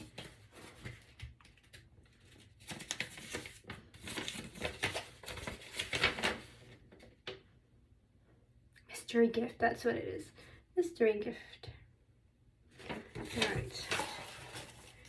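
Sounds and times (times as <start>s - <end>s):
paper rustling and crinkling: 0.0s - 7.1s, 12.8s - 15.0s.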